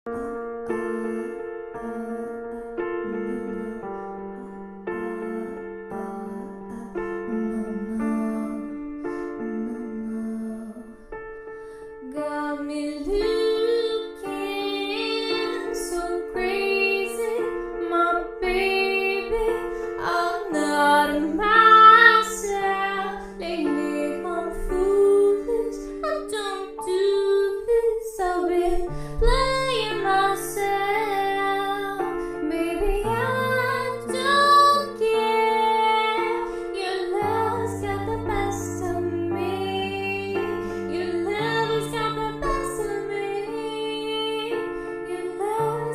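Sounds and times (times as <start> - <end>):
woman singing: 0.1 - 11.1, 12.0 - 45.9.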